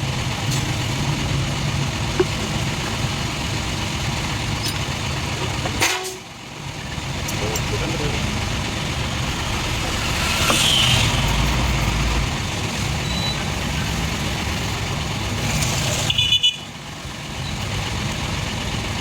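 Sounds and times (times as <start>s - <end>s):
road traffic rumble: 0.0s - 19.0s
car horn toot: 5.8s - 6.2s, 16.1s - 16.7s.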